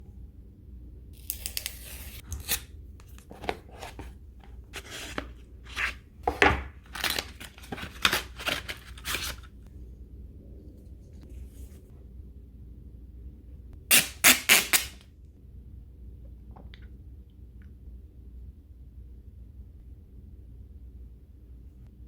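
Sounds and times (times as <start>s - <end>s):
paper packaging tearing and clicking: 1.2s - 4.1s, 6.8s - 9.6s, 13.9s - 15.0s.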